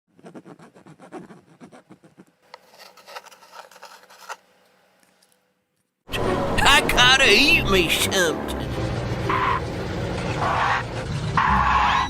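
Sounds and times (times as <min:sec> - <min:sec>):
scratching and scraping: 0:00.2 - 0:04.4.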